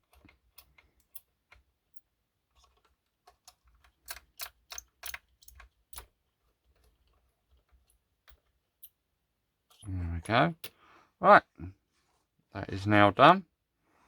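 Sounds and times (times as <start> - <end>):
small clicks and taps of handling: 0.0 - 9.0.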